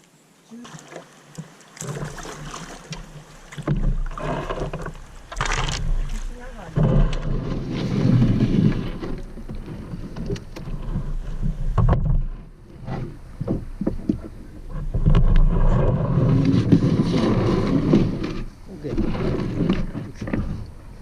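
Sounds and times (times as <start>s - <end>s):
paddle strokes through water: 0.0s - 21.0s
wind on microphone: 5.4s - 21.0s.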